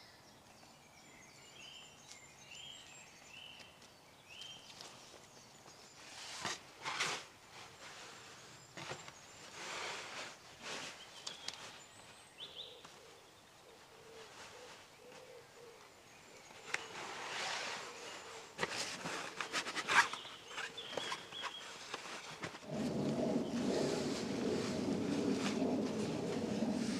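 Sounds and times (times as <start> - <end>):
rustling: 5.9 - 13.2, 16.5 - 26.9
faint bird calls: 7.8 - 26.9.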